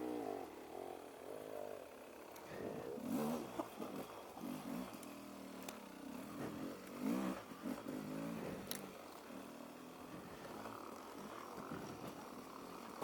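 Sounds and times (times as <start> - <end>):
off-road motorcycle engine revving: 0.0 - 13.0.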